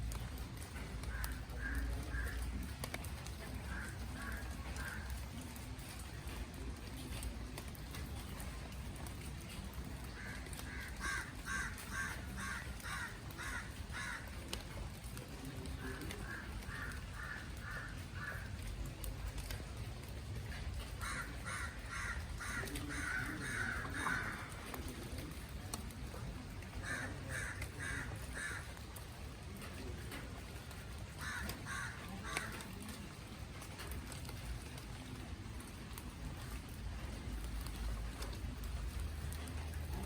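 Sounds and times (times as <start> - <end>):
crows cawing: 0.7 - 5.5, 10.0 - 14.7, 15.7 - 18.9, 20.8 - 25.4, 26.1 - 29.8, 30.6 - 33.0.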